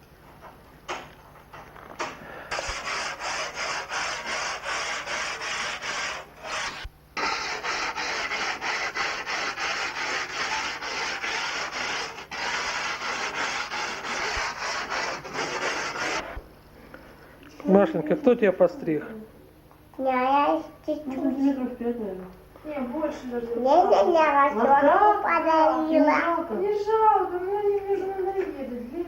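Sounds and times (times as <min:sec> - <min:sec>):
rhythmic rubbing strokes: 0:02.5 - 0:16.4.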